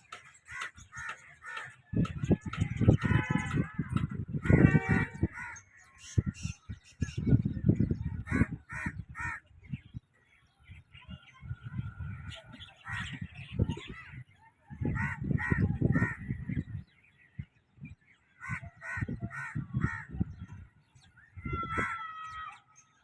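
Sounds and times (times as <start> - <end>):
crows cawing: 0.1 - 1.8, 4.4 - 5.9, 8.3 - 9.4, 14.9 - 16.3, 18.4 - 20.1, 21.6 - 22.6.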